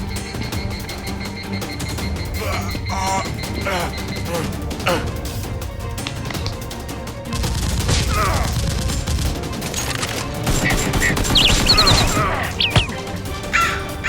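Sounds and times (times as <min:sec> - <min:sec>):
rapid gunfire: 0:07.3 - 0:13.0
high chirping calls: 0:10.9 - 0:13.9.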